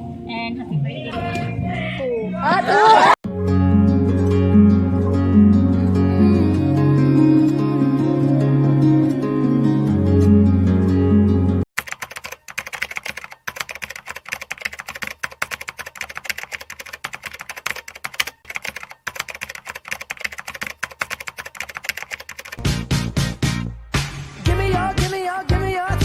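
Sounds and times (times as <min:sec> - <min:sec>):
computer keyboard typing: 0:11.8 - 0:22.6.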